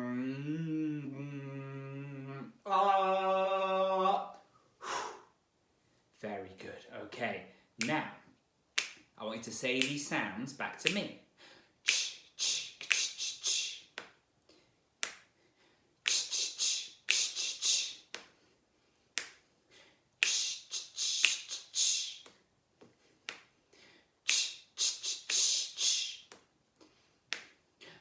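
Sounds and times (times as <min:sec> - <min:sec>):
man making hissing mouth sounds: 0:04.8 - 0:05.4, 0:11.8 - 0:14.0, 0:16.0 - 0:18.2, 0:20.2 - 0:22.4, 0:24.2 - 0:26.4.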